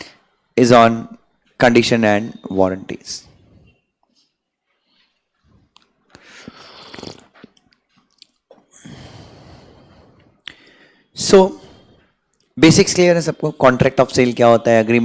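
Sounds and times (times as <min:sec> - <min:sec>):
soft breathing: 0:03.3 - 0:07.0, 0:08.7 - 0:12.4
mouth clicks: 0:05.7 - 0:08.8.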